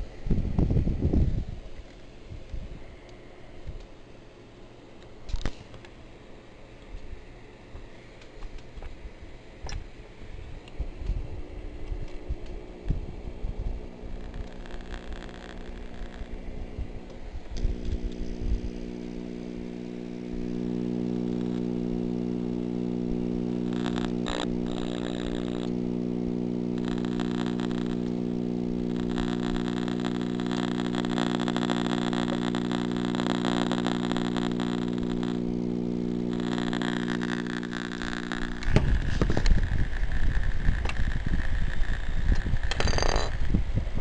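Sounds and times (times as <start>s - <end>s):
radio speaker hum: 0.0s - 44.0s
radio static hiss: 1.1s - 44.0s.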